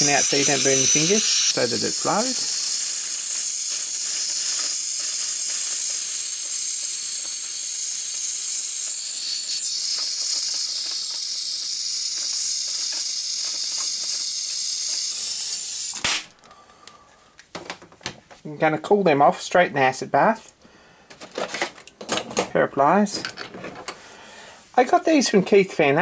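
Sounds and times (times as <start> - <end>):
gas torch hissing: 0.0 - 16.2.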